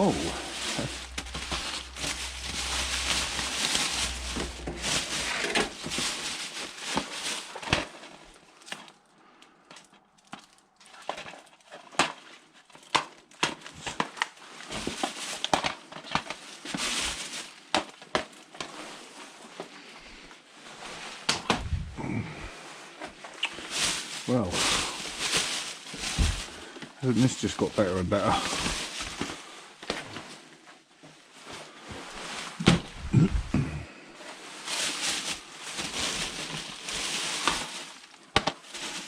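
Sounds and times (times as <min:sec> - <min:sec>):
plastic packaging rustling: 0:00.0 - 0:39.0
clicks and knocks of shifted items: 0:00.2 - 0:08.8.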